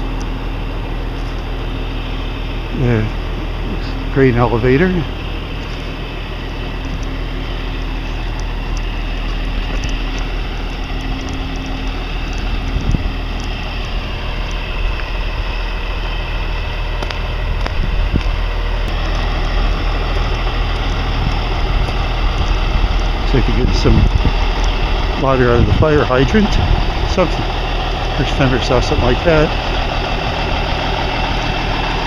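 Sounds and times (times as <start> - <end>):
low engine hum: 0.0 - 32.0
road or wind noise: 0.0 - 32.0.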